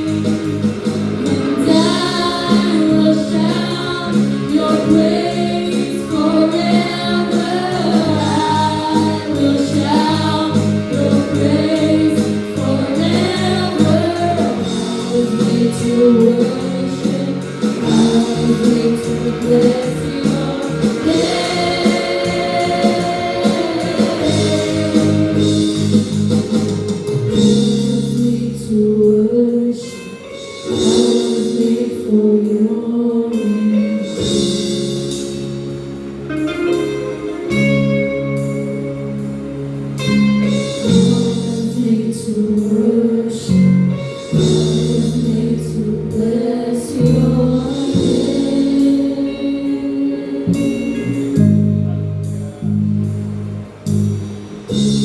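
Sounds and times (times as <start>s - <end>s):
group singing worship song: 0.0s - 30.0s, 30.6s - 35.1s, 40.7s - 51.7s
band accompaniment: 0.0s - 55.0s
drum hits: 17.0s - 28.0s.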